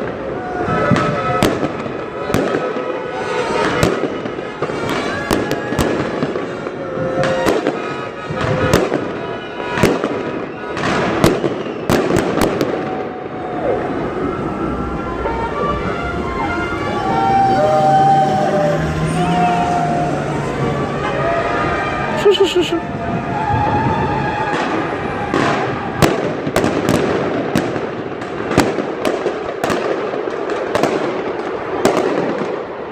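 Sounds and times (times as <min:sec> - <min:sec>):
distant fireworks bangs and crackle: 0:00.0 - 0:14.4, 0:23.0 - 0:32.9
fireworks banging: 0:00.0 - 0:14.4, 0:21.6 - 0:32.9.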